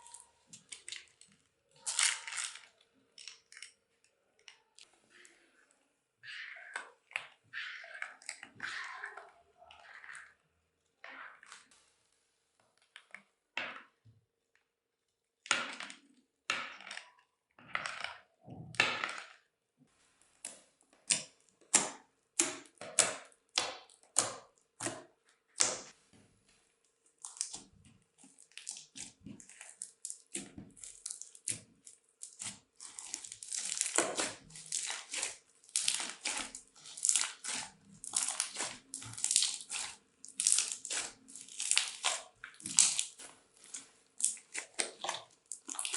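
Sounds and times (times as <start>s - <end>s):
crunchy slime being squeezed: 32.2s - 45.9s.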